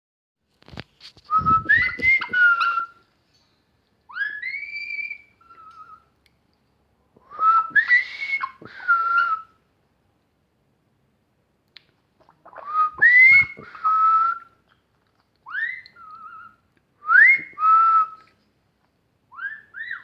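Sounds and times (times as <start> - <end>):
person whistling: 1.3 - 2.9, 7.3 - 9.4, 12.7 - 14.5, 17.1 - 18.3.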